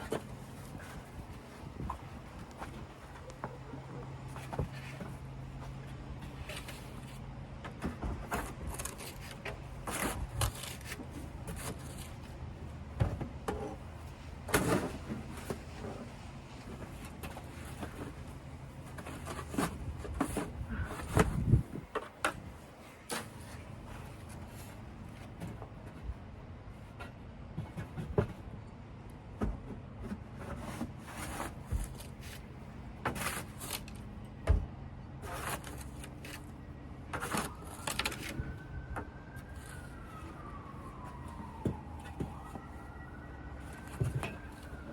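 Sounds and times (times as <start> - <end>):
traffic hum: 0.0 - 44.9
siren: 36.5 - 44.9.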